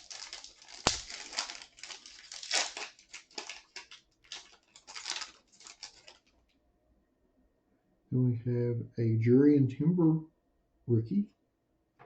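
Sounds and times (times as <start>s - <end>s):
wrapper tearing and crinkling: 0.0s - 6.4s.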